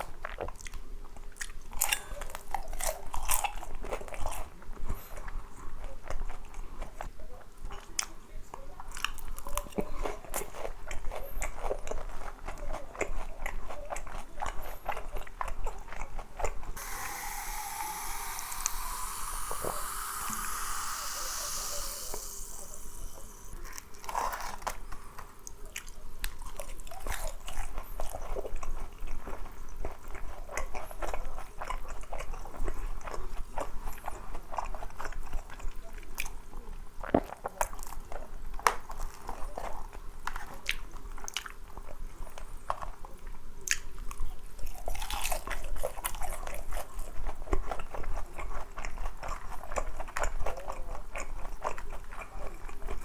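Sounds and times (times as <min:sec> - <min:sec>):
chewing crunchy food: 0:00.0 - 0:53.0
rushing hiss: 0:16.8 - 0:23.6.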